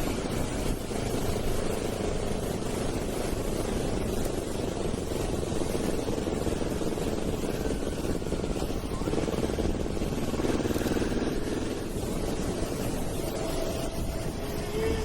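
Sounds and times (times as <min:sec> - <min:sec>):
motorcycle engine drone: 0:00.0 - 0:15.0
wind and road noise: 0:00.0 - 0:15.0.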